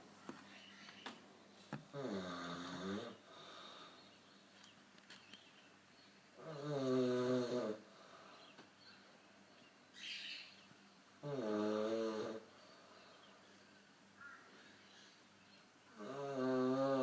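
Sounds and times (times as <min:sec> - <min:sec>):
man snoring: 0:01.9 - 0:03.2, 0:06.4 - 0:07.8, 0:11.2 - 0:12.5, 0:16.0 - 0:17.0
faint breathing: 0:03.2 - 0:04.2, 0:07.8 - 0:08.7, 0:12.5 - 0:13.6.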